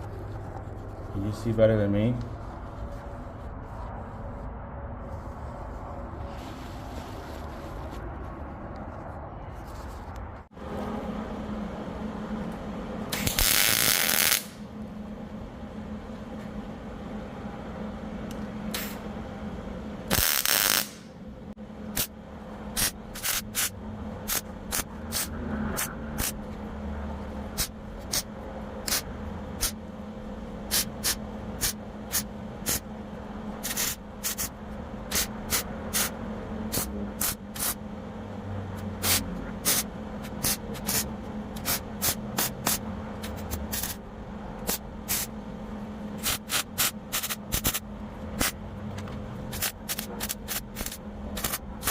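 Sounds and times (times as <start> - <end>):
steady low hum: 0.0 - 51.9
welder crackling zaps: 13.1 - 14.7, 18.7 - 19.0, 20.1 - 21.2, 21.9 - 22.2, 22.8 - 26.4, 27.5 - 29.8, 30.7 - 32.9, 33.6 - 37.8, 38.8 - 44.0, 44.6 - 45.3, 46.2 - 47.8, 48.4 - 48.6, 49.5 - 51.9.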